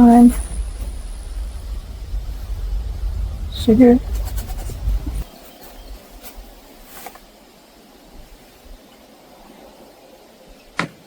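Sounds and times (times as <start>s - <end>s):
low rumble: 0.0s - 8.4s.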